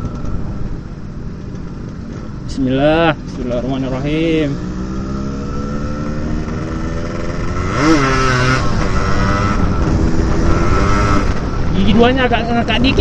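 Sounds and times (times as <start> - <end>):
two-stroke motorcycle engine accelerating: 3.4 - 11.5.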